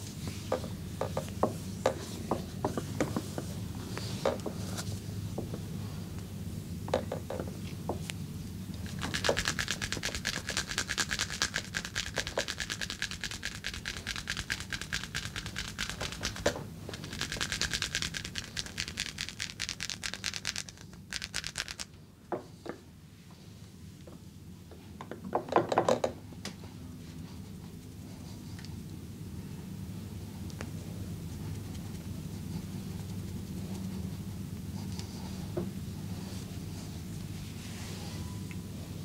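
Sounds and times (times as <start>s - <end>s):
hands rubbing rhythmically: 8.8s - 21.9s.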